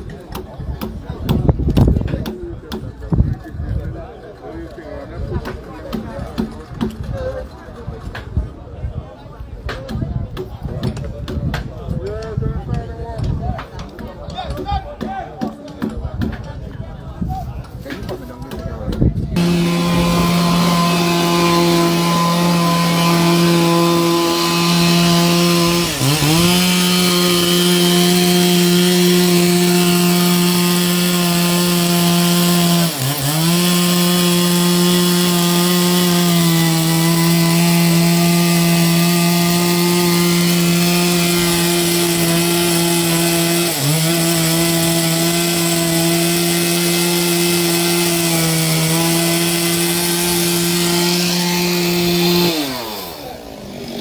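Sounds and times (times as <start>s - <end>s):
small engine running at high speed: 19.4s - 54.0s.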